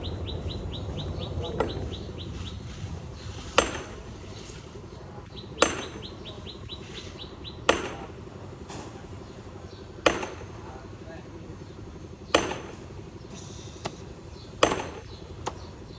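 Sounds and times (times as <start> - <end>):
bird chirping: 0.0 - 4.5, 5.2 - 7.7, 13.2 - 15.9.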